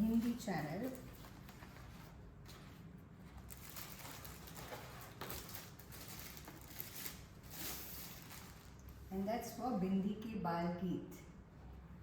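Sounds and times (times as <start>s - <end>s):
packaging rustling: 0.0s - 9.0s.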